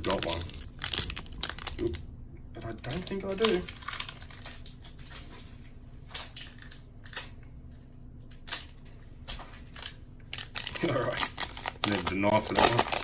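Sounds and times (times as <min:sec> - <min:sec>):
plastic wrapper crinkling: 0:00.0 - 0:02.1, 0:02.7 - 0:07.2, 0:09.6 - 0:13.0.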